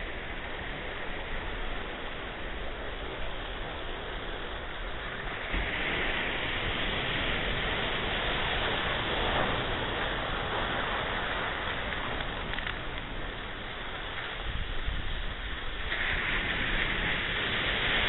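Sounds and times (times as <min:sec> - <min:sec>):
ocean wave breaking: 0:00.0 - 0:18.0
surf hiss: 0:00.0 - 0:18.0.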